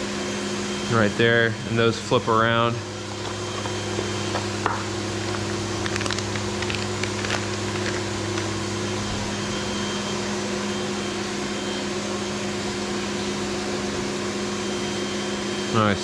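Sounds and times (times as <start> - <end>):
machine hum: 0.0 - 16.0.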